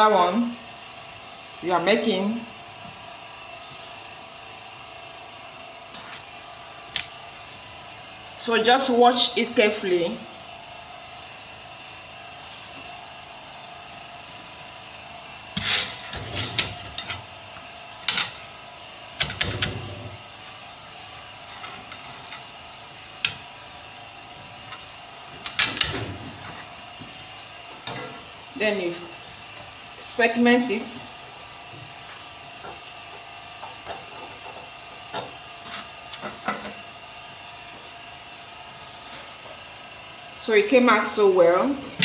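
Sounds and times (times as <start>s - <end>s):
steady background hum: 0.0s - 42.0s
hands working dough on wooden board: 15.6s - 17.2s.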